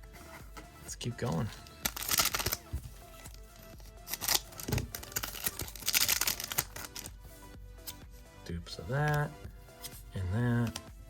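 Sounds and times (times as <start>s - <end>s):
foil pack crinkling and tearing: 1.8s - 2.7s, 4.0s - 7.1s.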